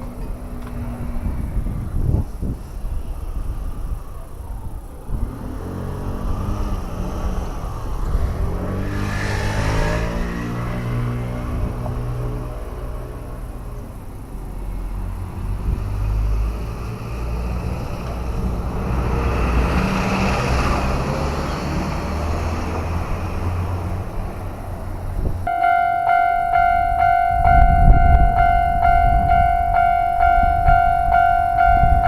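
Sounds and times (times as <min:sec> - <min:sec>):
passing vehicle rumble: 0:00.0 - 0:32.0
level crossing warning bell: 0:25.4 - 0:32.0.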